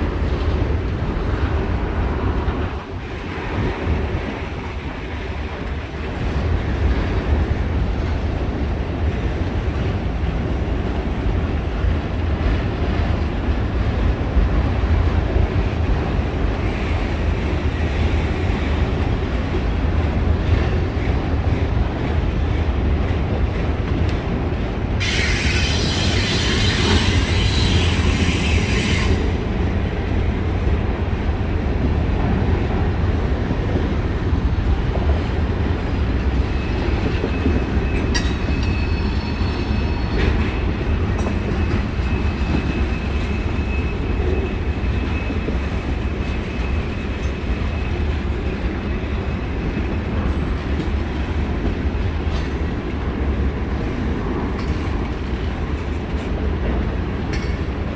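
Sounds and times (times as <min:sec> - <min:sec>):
train wheels rumbling on rails: 0:00.0 - 0:57.9
high wheel squeal: 0:25.0 - 0:29.4, 0:36.3 - 0:45.5.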